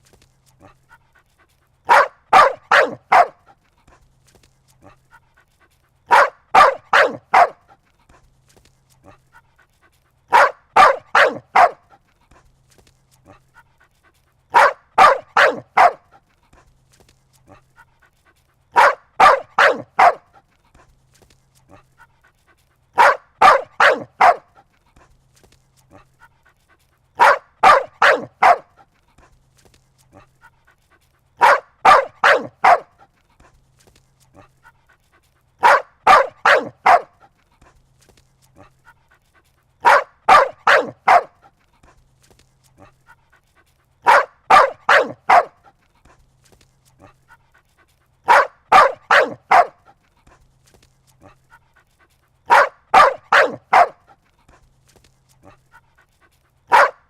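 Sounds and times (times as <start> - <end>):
dog barking: 1.9 - 3.6, 6.1 - 7.8, 10.3 - 12.0, 14.5 - 16.2, 18.7 - 20.5, 23.0 - 24.7, 27.2 - 28.9, 31.4 - 33.1, 35.6 - 37.3, 39.8 - 41.6, 44.0 - 45.8, 48.2 - 50.0, 52.4 - 54.2, 56.7 - 57.0.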